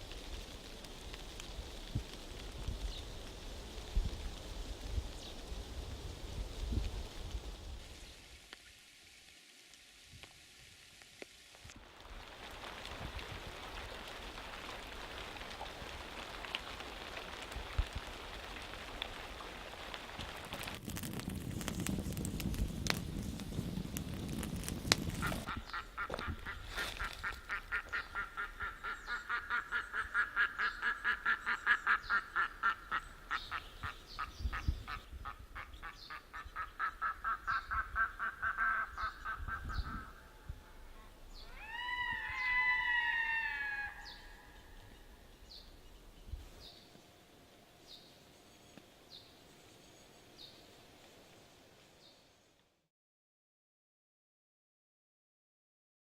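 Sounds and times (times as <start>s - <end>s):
birds calling: 24.1s - 46.8s.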